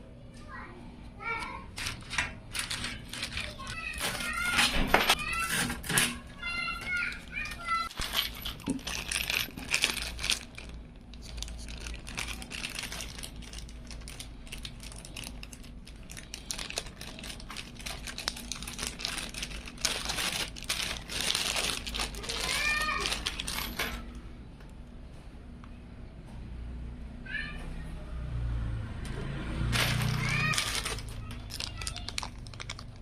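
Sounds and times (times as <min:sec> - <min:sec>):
plastic packaging crinkling: 0:01.7 - 0:24.0, 0:29.7 - 0:33.0.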